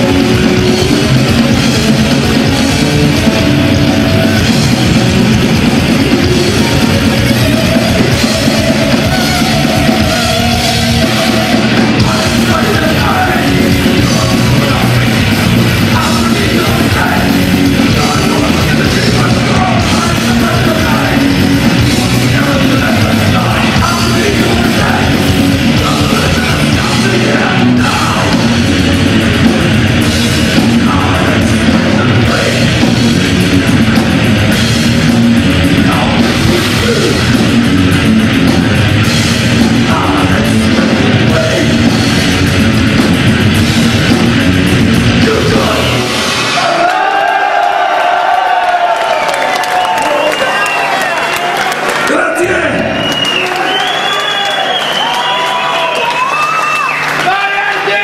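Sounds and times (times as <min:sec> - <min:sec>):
heavy metal band playing live: 0:00.0 - 0:58.0
shouted vocals: 0:45.2 - 0:58.0.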